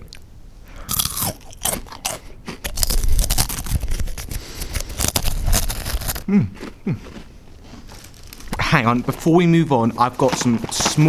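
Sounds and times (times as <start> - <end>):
breadstick crunching: 0.9 - 8.6
person humming: 6.2 - 7.0.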